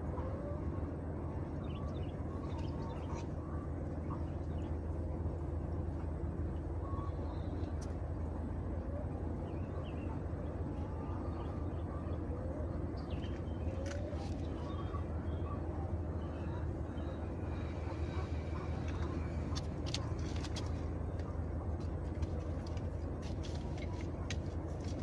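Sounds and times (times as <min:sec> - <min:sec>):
low hum: 0:00.0 - 0:25.0.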